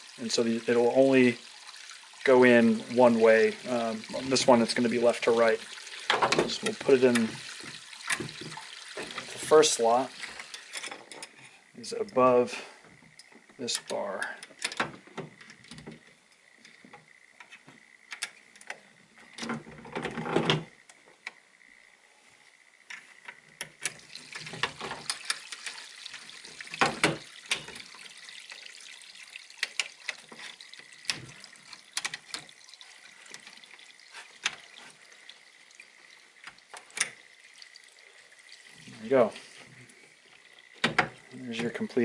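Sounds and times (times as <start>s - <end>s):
parts clicking and scraping: 10.2s - 12.2s, 29.6s - 35.2s.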